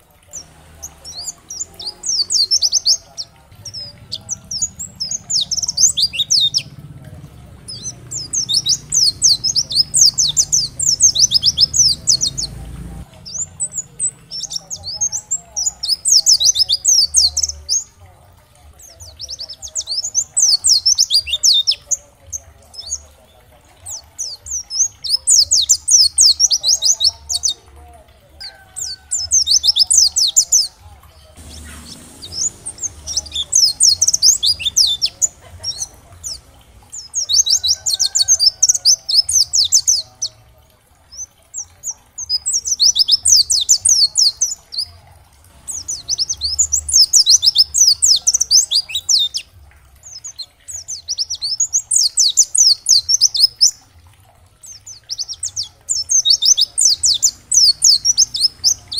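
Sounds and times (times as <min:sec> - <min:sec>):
bird twittering: 0:00.0 - 0:17.9, 0:28.4 - 0:40.4, 0:41.1 - 0:45.0, 0:45.6 - 0:53.8, 0:54.7 - 0:58.9.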